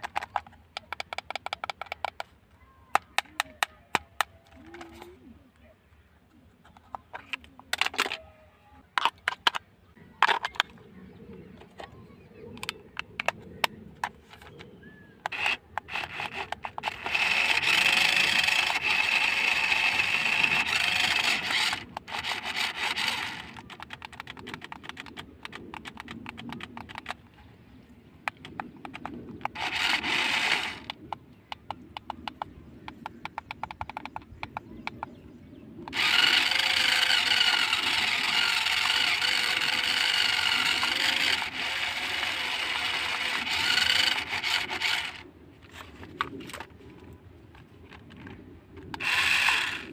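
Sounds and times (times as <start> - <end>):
plastic parts clicking and rattling: 0.0 - 5.3, 6.3 - 27.5, 28.2 - 35.2, 35.8 - 49.9
small electric motor whining: 15.2 - 25.1, 29.4 - 31.0, 35.9 - 45.2, 48.9 - 49.9.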